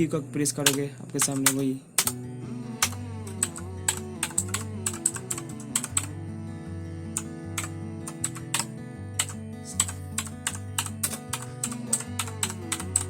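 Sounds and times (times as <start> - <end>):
mechanical keyboard key clicks: 0.6 - 2.2, 2.8 - 6.1, 7.2 - 13.0.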